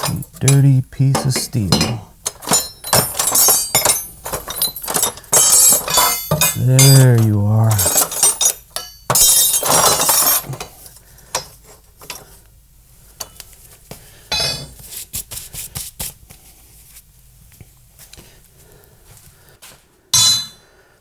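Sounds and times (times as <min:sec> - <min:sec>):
scrap steel clinking and clattering: 0:01.7 - 0:06.6, 0:07.8 - 0:12.2.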